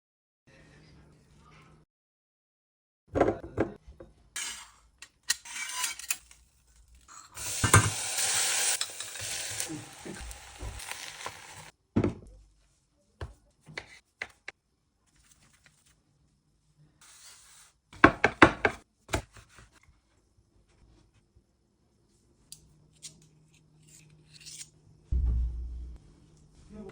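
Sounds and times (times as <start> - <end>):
steady sizzling: 7.1 - 11.7
utensils clinking against pans: 7.3 - 11.6.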